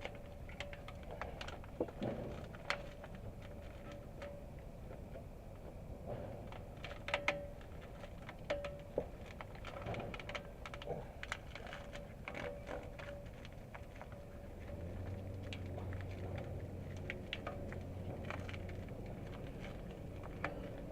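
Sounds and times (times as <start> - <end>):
faint steady hum: 0.0 - 20.9.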